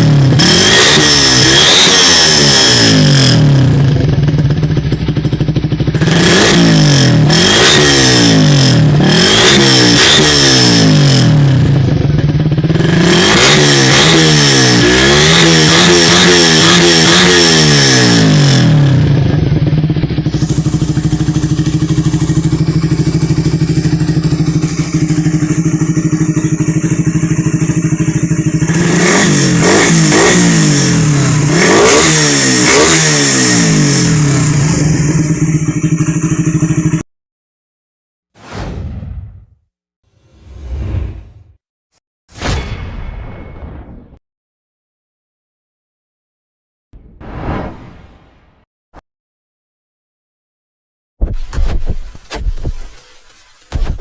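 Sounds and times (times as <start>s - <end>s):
motorcycle engine revving and idling: 0.0s - 37.1s.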